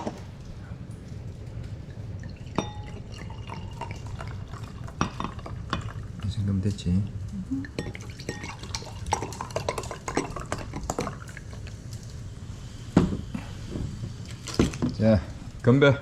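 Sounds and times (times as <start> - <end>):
drink being poured: 1.8 - 6.5, 7.4 - 12.2
glassware clinking: 2.3 - 6.3, 7.6 - 11.4.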